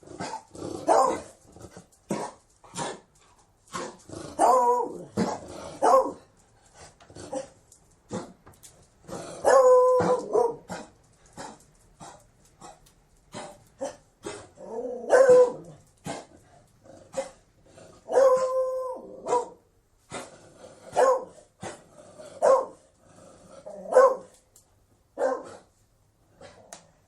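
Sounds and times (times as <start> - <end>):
dog barking: 0.2 - 1.3, 3.8 - 6.2, 9.4 - 11.6, 15.0 - 16.3, 18.1 - 19.6, 20.9 - 21.8, 22.4 - 22.8, 23.9 - 24.3, 25.2 - 25.7
dog baying: 3.8 - 6.2, 9.4 - 16.3.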